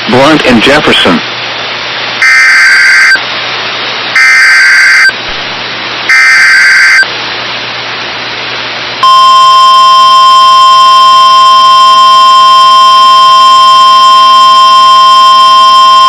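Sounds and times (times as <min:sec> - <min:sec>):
screechy digital data bursts: 0:02.2 - 0:03.2, 0:04.2 - 0:05.1, 0:06.1 - 0:07.1
steady single-pitch alert tone: 0:02.2 - 0:03.2, 0:04.2 - 0:05.1, 0:06.1 - 0:07.1, 0:09.0 - 0:16.0.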